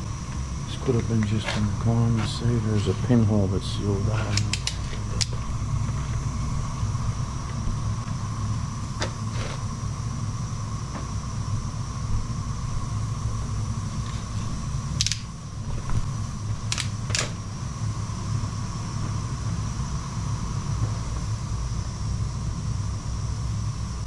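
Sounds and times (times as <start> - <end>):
faint steady whine: 0.0 - 24.0
steam boiler low rumble: 0.0 - 24.0
sharp clicks: 4.3 - 5.4, 15.0 - 15.3.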